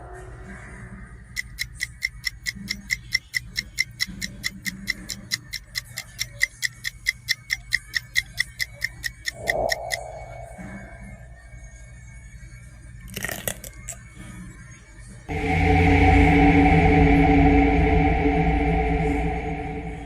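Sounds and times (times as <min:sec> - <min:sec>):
rapid clock-like ticking: 0:01.3 - 0:10.4
low steady drone: 0:09.3 - 0:12.0, 0:15.3 - 0:20.0.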